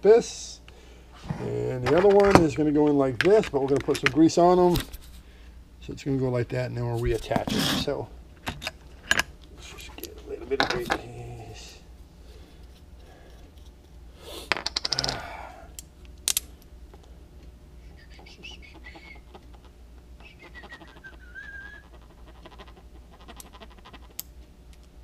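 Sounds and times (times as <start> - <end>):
low steady hum: 0.0 - 25.0
small metal parts clinking: 14.5 - 15.3
faint wavering whistle-like tone: 20.2 - 21.9.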